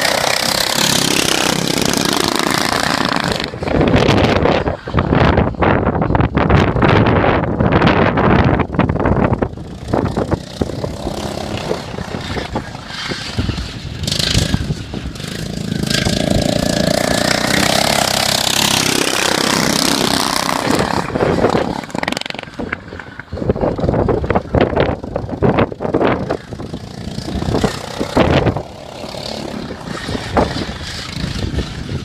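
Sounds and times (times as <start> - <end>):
lawn mower engines racing: 0.0 - 32.0
wind buffeting microphone: 0.0 - 32.0.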